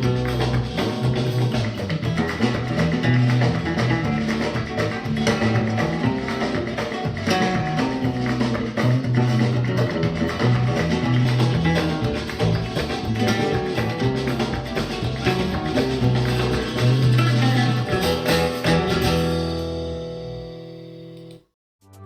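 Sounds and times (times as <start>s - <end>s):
flamenco guitar music: 0.0s - 21.3s.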